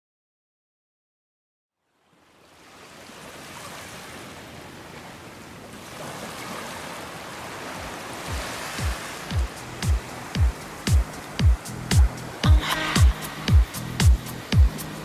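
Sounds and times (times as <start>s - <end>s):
rain hissing: 9.4s - 15.0s.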